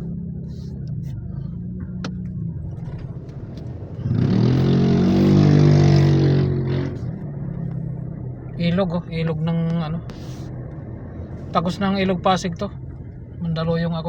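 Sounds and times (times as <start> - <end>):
car engine running from cabin: 0.0 - 14.0
loud engine sound rising in pitch: 4.0 - 7.1.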